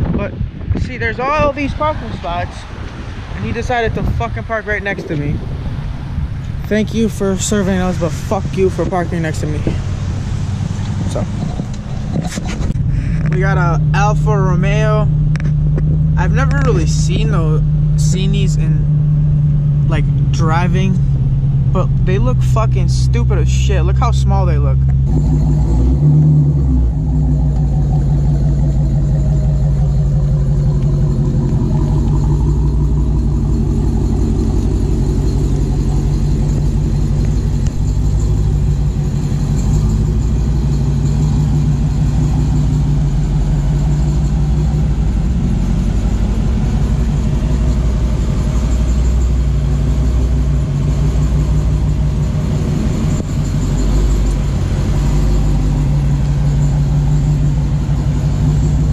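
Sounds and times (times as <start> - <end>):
car engine running: 0.0 - 58.9
road noise: 0.0 - 58.9.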